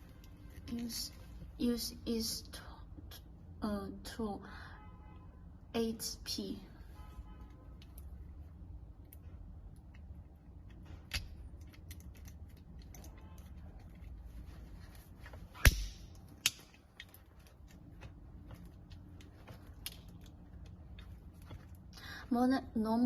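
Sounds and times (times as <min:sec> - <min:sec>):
crimping tool sharp snap: 0:15.6 - 0:16.8.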